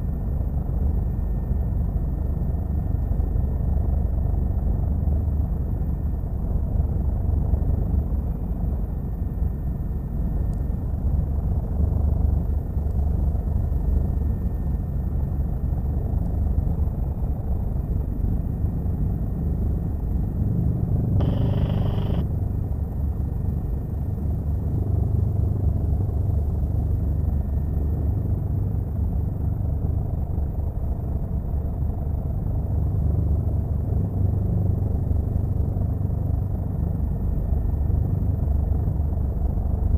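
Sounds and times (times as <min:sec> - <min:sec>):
helicopter rotor and engine drone: 0:00.0 - 0:39.9
brief electronic tone: 0:21.2 - 0:22.2.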